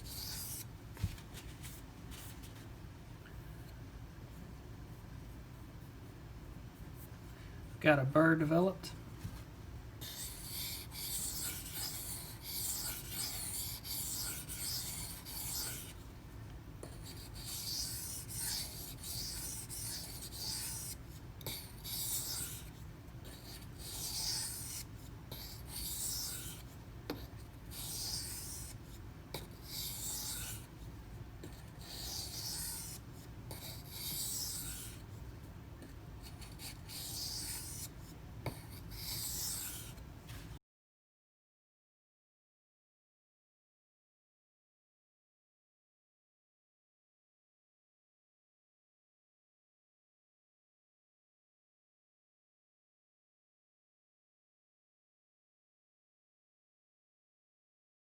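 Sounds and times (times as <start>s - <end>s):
low steady hum: 0.0s - 39.1s
knife scraping on whetstone: 0.1s - 0.7s, 10.0s - 16.0s, 17.1s - 22.7s, 23.3s - 28.8s, 29.4s - 30.7s, 31.5s - 35.0s, 36.4s - 37.9s, 38.5s - 40.0s.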